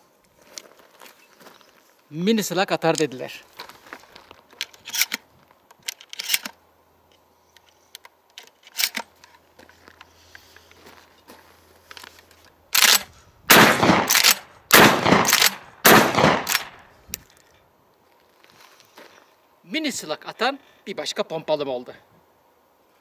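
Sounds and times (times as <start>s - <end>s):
shotgun handling clicks: 4.5s - 10.1s, 11.9s - 17.5s
shotgun shots: 12.8s - 16.8s.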